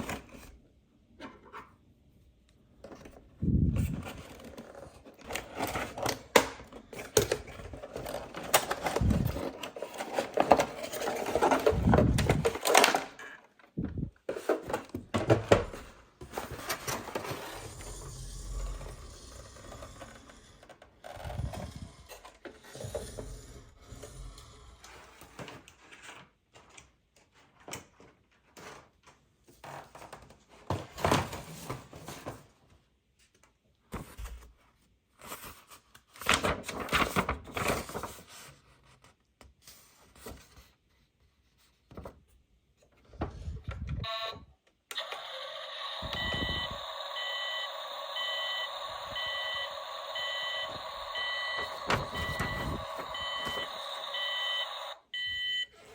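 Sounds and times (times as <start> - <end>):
toy packaging rubbing and rustling: 3.4 - 15.1, 45.1 - 54.9.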